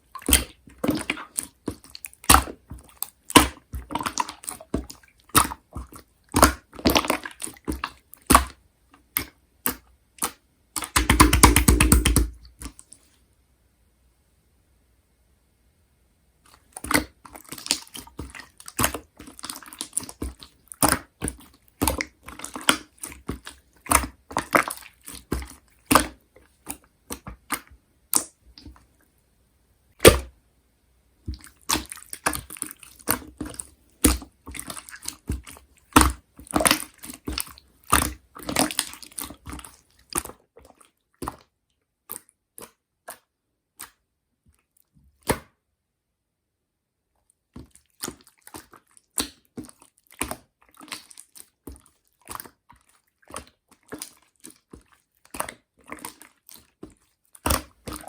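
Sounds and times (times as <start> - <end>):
sticky slime clicks and pops: 10.8 - 12.4.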